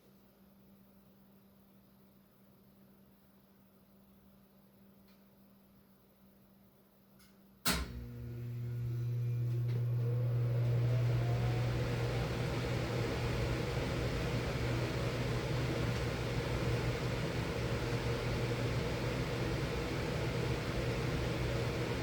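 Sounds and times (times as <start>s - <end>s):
furnace switch click: 7.7s - 8.0s
furnace motor hum: 7.7s - 22.0s
blower rushing with whine: 8.1s - 22.0s.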